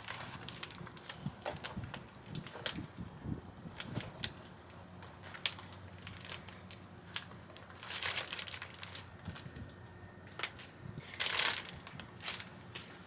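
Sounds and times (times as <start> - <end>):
plastic bag rustling: 5.2 - 9.7, 10.4 - 13.0.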